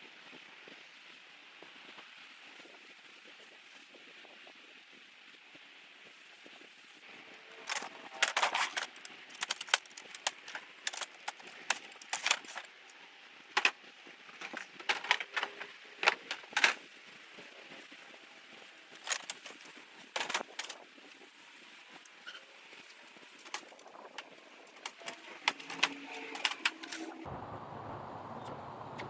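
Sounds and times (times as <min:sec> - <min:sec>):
small hard objects clattering: 0:07.7 - 0:12.9.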